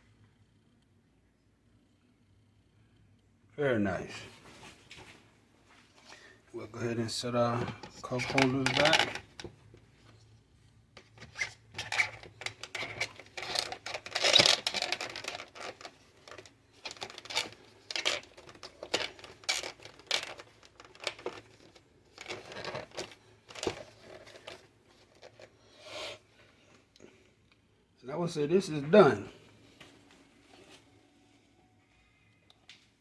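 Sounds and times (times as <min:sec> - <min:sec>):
plastic parts rustling and clicking: 0:07.4 - 0:10.2, 0:11.0 - 0:25.6.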